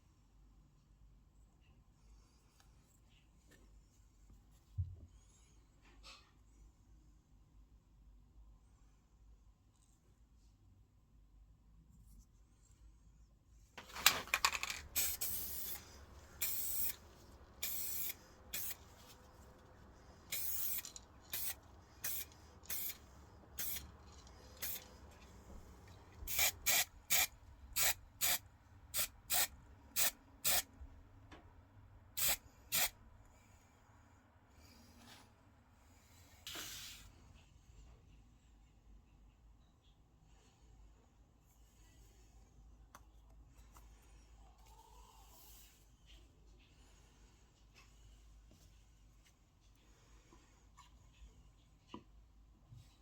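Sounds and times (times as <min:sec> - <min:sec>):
paint spraying in hissing bursts: 0:14.8 - 0:19.2, 0:20.3 - 0:24.9, 0:26.3 - 0:28.4, 0:29.0 - 0:30.6, 0:32.2 - 0:32.9.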